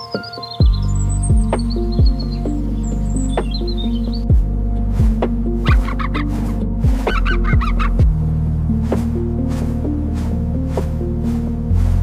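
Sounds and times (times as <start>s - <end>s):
faint bird chirps: 0.0s - 5.0s, 5.6s - 8.0s
relaxing background music: 0.0s - 12.0s.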